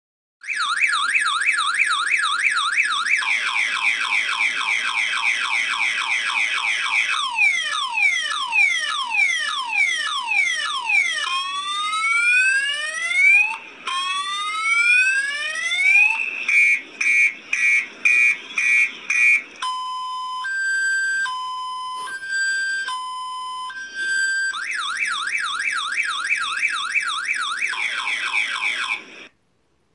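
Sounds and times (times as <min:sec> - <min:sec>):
car alarm siren: 0:00.4 - 0:29.3.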